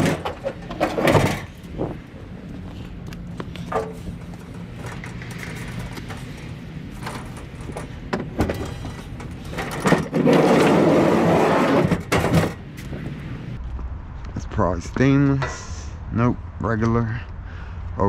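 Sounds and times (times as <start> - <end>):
scrap metal clanking: 0.0 - 2.0, 3.6 - 12.7
heavy metal scraping: 3.6 - 13.6.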